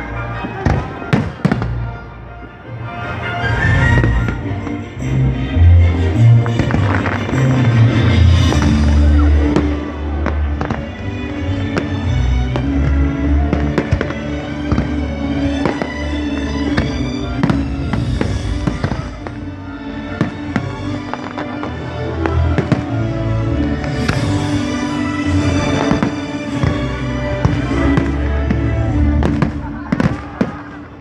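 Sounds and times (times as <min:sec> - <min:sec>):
fireworks bursting and crackling: 0:00.5 - 0:01.8, 0:06.4 - 0:31.0.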